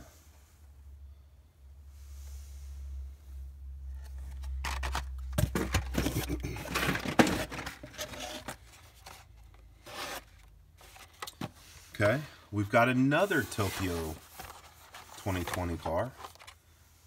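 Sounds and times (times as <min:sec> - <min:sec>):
low steady hum: 0:00.0 - 0:17.0
plastic and cardboard crinkling: 0:04.0 - 0:11.6, 0:13.2 - 0:16.6.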